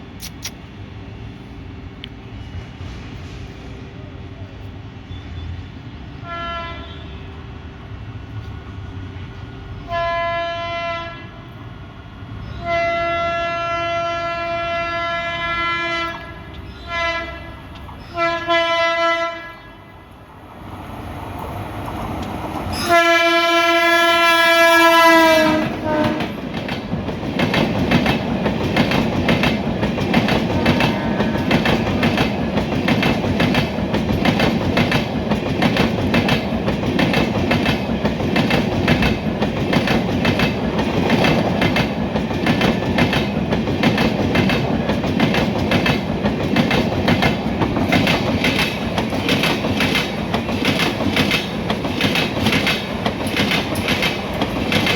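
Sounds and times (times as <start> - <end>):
train horn blasts: 6.2 - 7.4, 9.8 - 11.6, 12.6 - 20.0, 22.7 - 26.4, 30.5 - 31.7
wheels clacking over rail joints: 21.8 - 54.9.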